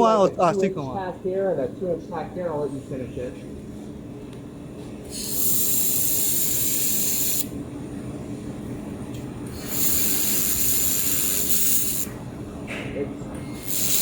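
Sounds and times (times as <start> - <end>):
steady low hum: 0.0 - 14.0
laser welder hissing: 5.1 - 7.5, 9.5 - 12.2, 13.5 - 14.0.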